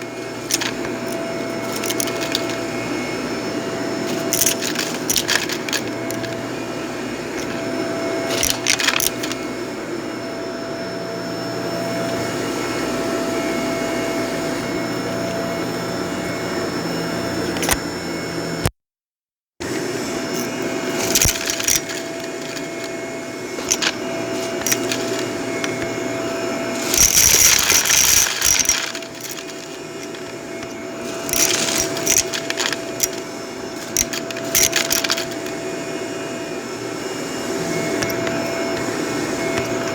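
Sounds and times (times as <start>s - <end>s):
vacuum cleaner running on carpet: 0.0s - 18.7s, 19.6s - 39.9s
debris crackling and rattling: 0.4s - 2.7s, 4.1s - 6.4s, 8.3s - 9.4s, 20.4s - 23.0s, 23.6s - 26.0s, 26.7s - 35.6s.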